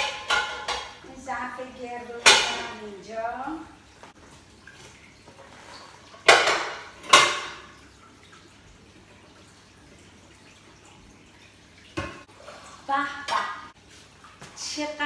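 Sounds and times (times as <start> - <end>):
frying pan clanking on plate: 0.0 - 1.0, 6.2 - 7.8.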